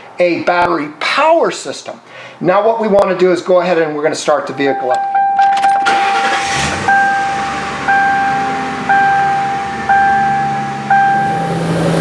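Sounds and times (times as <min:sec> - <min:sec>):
car warning chime dinging: 0:04.6 - 0:12.0
car engine idling faintly: 0:05.2 - 0:12.0.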